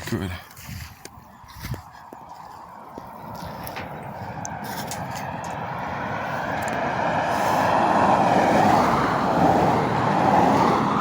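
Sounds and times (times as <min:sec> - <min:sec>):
motor vehicle passing close: 0:02.6 - 0:11.0.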